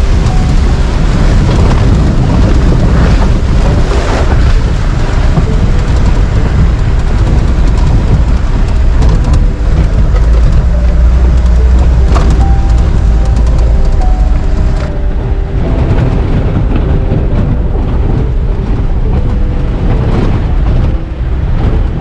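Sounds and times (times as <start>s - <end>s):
vehicle engine under load: 0.0s - 22.0s
water splashing and rushing: 0.0s - 22.0s
wind noise on microphone: 0.0s - 22.0s.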